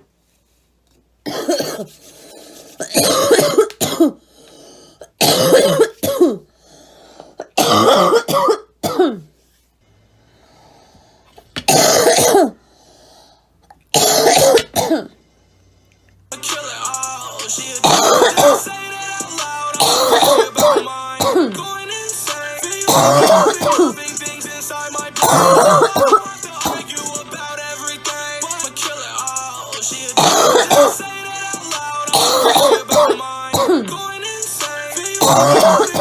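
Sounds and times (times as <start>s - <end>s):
girl coughing: 1.3s - 1.9s, 2.8s - 4.2s, 5.1s - 6.5s, 7.4s - 9.3s, 11.7s - 12.6s, 14.0s - 15.1s, 17.8s - 18.7s, 19.8s - 21.6s, 22.9s - 24.0s, 25.2s - 26.9s, 30.2s - 31.0s, 32.1s - 33.9s, 35.2s - 36.0s
faint breaths: 6.5s - 7.4s, 9.4s - 11.4s, 12.6s - 13.6s.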